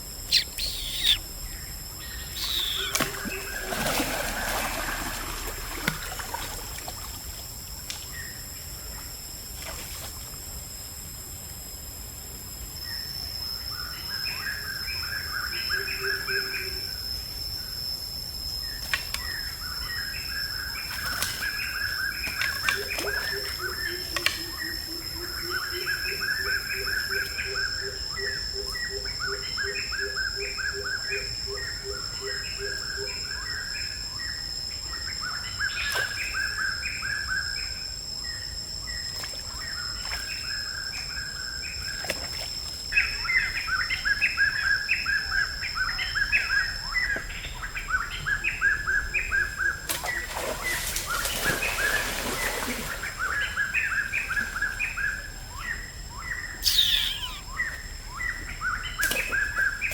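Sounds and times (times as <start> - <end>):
low pulsing bird call: 0.0 - 3.7, 56.6 - 57.8
birds chirping: 0.2 - 1.3, 2.0 - 3.6, 56.6 - 57.8.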